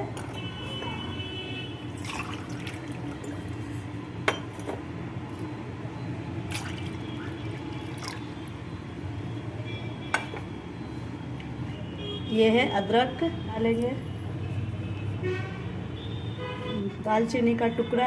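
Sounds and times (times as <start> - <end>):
water pouring into a pot: 1.9 - 3.5, 6.5 - 8.5.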